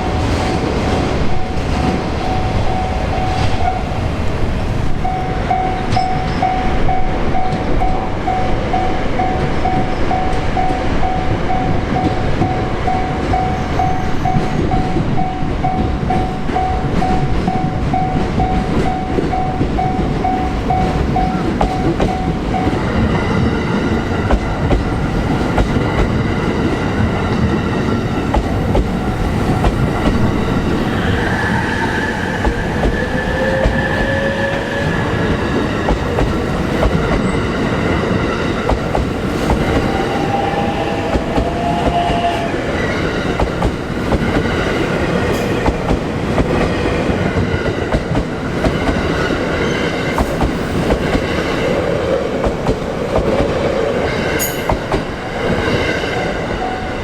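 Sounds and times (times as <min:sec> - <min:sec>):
crossing warning bell dinging: 0:00.0 - 0:51.8, 0:54.0 - 0:57.0
train rumble and wheel clatter: 0:00.0 - 0:57.0
high wheel squeal: 0:30.6 - 0:35.4.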